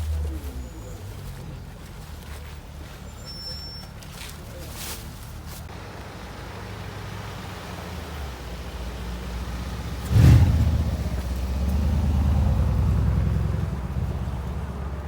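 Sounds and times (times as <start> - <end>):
car engine revving and accelerating: 7.2 - 15.0.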